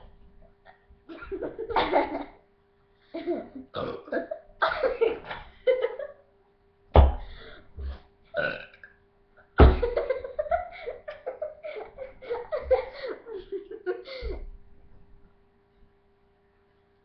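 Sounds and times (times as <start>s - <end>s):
girl giggling: 1.1s - 2.4s, 3.1s - 6.2s, 9.6s - 14.5s.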